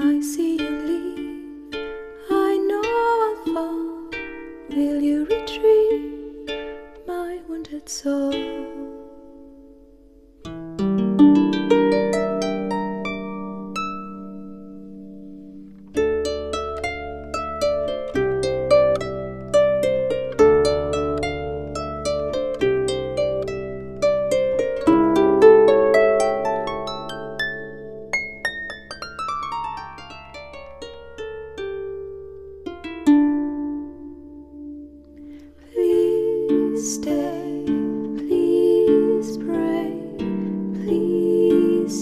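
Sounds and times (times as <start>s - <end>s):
plucked harp-like notes: 0.0s - 42.0s.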